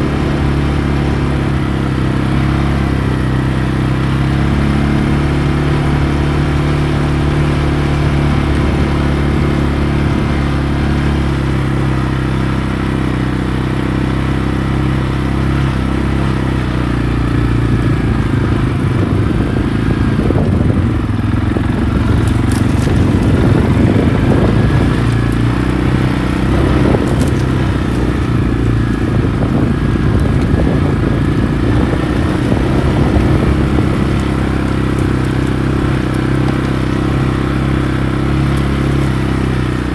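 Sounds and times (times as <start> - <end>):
atv engine running: 0.0 - 39.9
rattling: 21.5 - 39.9.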